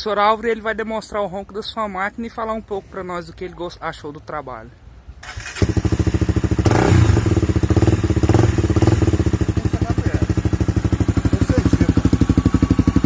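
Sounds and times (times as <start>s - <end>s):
motorcycle engine idling: 5.3s - 13.0s.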